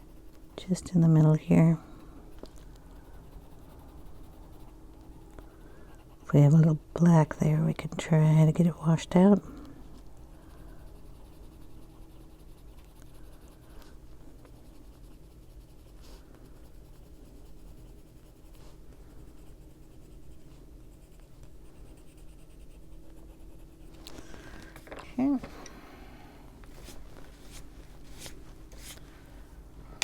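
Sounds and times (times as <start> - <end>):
colored pencil scratching on paper: 0.0 - 9.4, 10.3 - 24.1.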